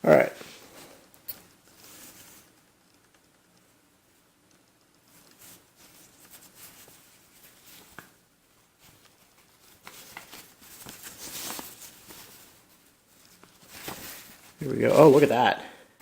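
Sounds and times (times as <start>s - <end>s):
small taps and scrapes: 4.4s - 8.2s
old paper rustling: 4.5s - 15.6s.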